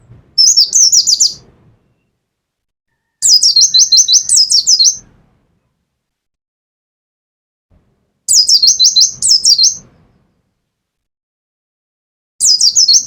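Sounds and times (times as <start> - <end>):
songbird singing: 0.0 - 2.2, 2.9 - 5.8, 8.3 - 10.4, 12.4 - 13.0.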